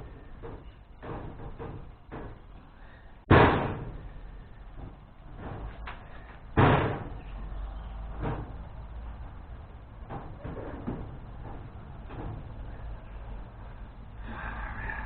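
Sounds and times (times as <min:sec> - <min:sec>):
knocks and clatter: 0:00.2 - 0:02.5, 0:03.3 - 0:04.1, 0:04.8 - 0:07.2, 0:08.1 - 0:09.0, 0:10.0 - 0:12.8
loud bangs: 0:03.2 - 0:04.1.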